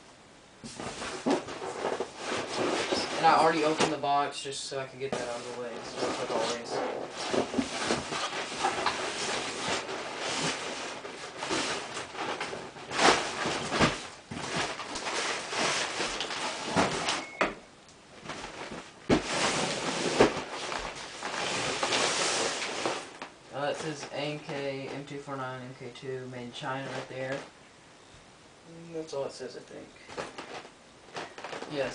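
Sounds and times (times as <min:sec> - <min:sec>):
cardboard and paper rustling: 0:00.6 - 0:04.2, 0:05.0 - 0:17.2, 0:18.2 - 0:25.2, 0:30.0 - 0:31.9.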